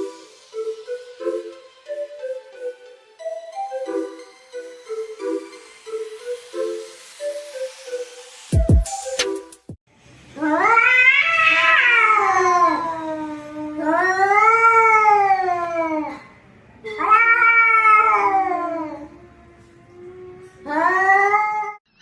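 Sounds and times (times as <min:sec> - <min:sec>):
cats caterwauling: 0:10.4 - 0:21.8.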